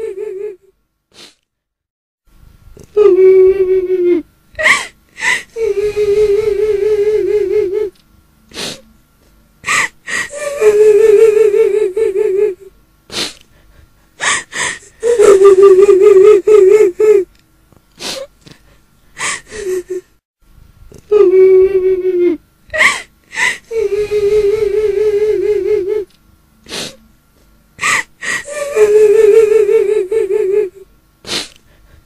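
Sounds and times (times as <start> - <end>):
woman wailing: 3.0 - 7.9, 9.7 - 12.7, 14.2 - 17.3, 21.1 - 26.1, 27.8 - 30.8
sobbing gasps: 4.6 - 5.6, 9.6 - 10.8, 13.1 - 15.2, 18.0 - 20.1, 22.7 - 25.8, 27.8 - 29.8.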